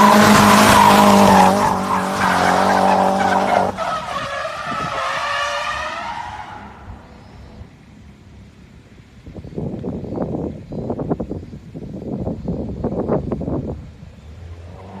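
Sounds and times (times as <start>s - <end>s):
car engine at high revs: 0.0s - 7.6s, 14.0s - 15.0s.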